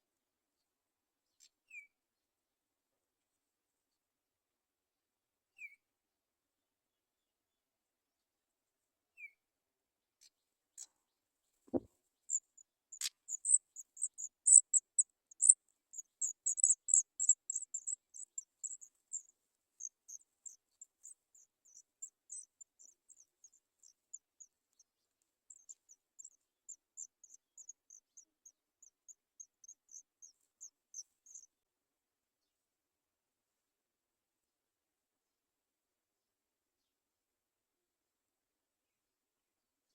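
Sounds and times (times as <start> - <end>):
nestlings cheeping: 14.5 - 15.6.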